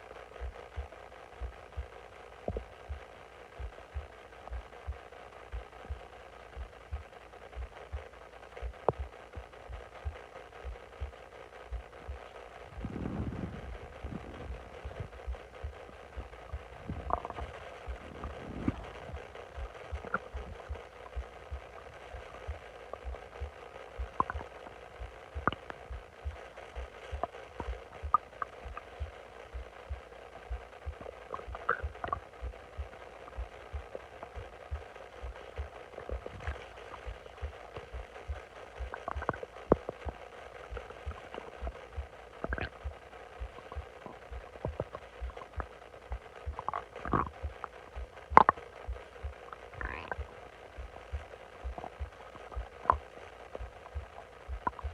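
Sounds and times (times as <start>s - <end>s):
stomach gurgling: 0.0s - 54.9s
low thumps: 11.7s - 21.6s.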